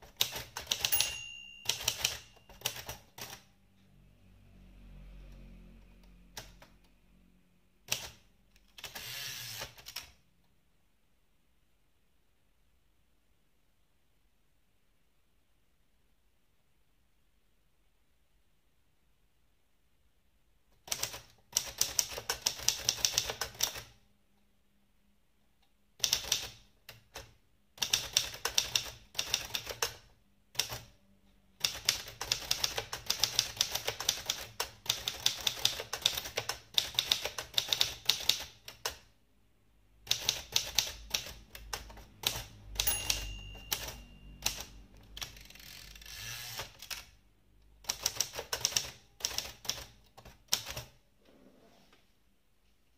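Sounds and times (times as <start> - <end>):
typewriter bell ringing: 0.6 - 2.9, 42.7 - 44.9.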